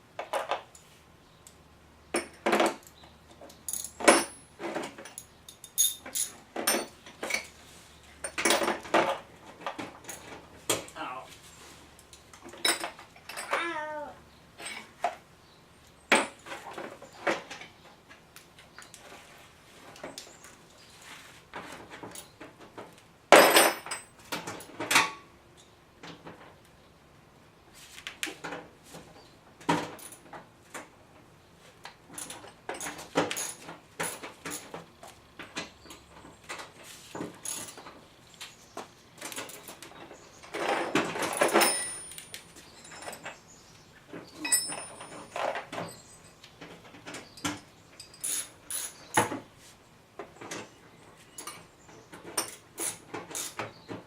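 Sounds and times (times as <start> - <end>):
objects knocking and rattling: 2.1 - 7.6, 8.2 - 10.9, 12.4 - 13.8, 16.1 - 18.2, 21.5 - 25.3, 28.4 - 31.3, 32.1 - 38.1, 38.8 - 43.4, 44.1 - 49.5.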